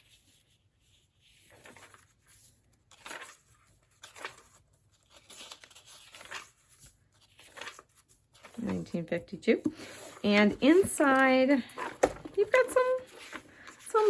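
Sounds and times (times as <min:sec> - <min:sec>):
book pages rustling: 0:00.0 - 0:14.0.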